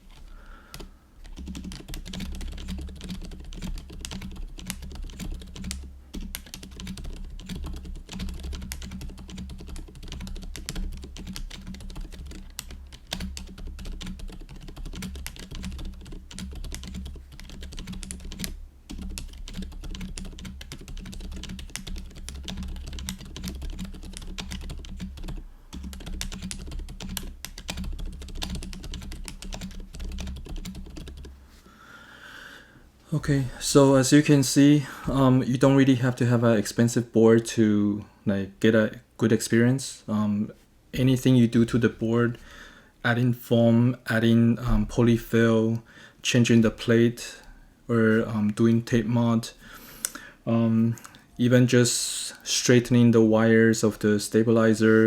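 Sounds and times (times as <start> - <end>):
quiet mechanical keyboard typing: 0.0 - 31.4.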